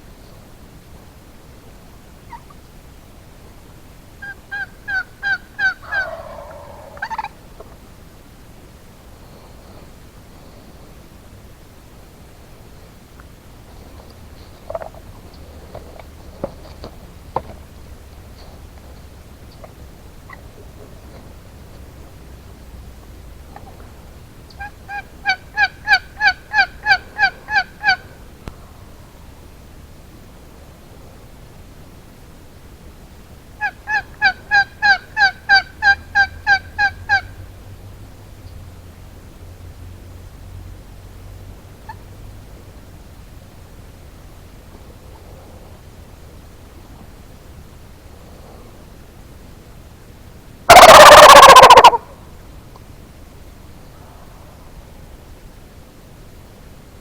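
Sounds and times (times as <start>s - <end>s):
raspy turkey call: 2.3s - 2.6s, 4.2s - 7.7s, 19.5s - 21.0s, 23.6s - 28.3s, 33.6s - 37.4s, 50.7s - 52.2s
turkey yelping: 2.3s - 2.6s, 4.2s - 7.4s, 24.5s - 28.2s, 33.6s - 37.3s, 50.7s - 52.1s.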